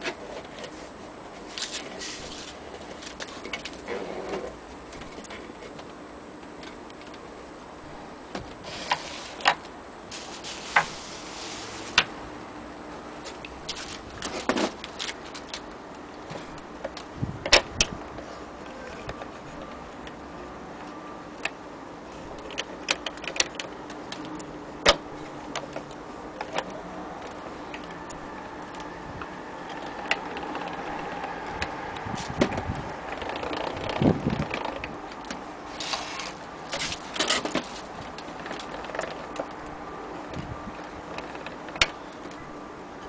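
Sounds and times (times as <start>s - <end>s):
faint steady hum: 0.0s - 43.0s
faint whirring: 0.0s - 43.0s
gramophone mechanical clicks: 20.8s - 42.5s.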